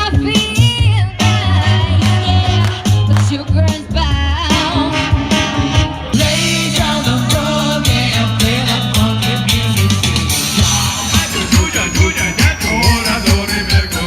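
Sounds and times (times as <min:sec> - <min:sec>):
pop song with singing: 0:00.0 - 0:14.0.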